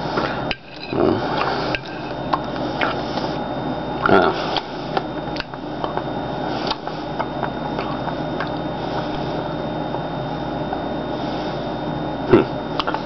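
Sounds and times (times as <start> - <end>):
room hum: 0.0 - 13.0
person chewing food: 6.6 - 9.2.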